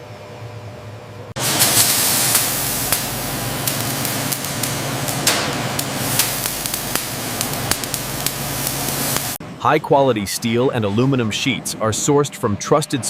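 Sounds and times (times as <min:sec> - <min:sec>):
low machinery hum: 0:00.0 - 0:09.6
loud machinery hiss: 0:01.4 - 0:09.4.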